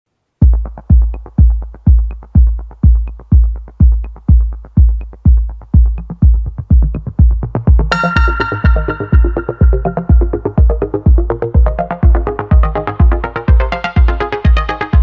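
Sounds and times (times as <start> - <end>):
hi-hat ticks: 0.4 - 11.9
kick drum beat: 0.4 - 15.0.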